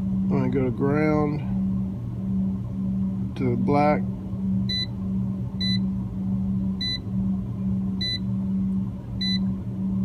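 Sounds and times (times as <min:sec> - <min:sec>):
low electrical hum: 0:00.0 - 0:10.0.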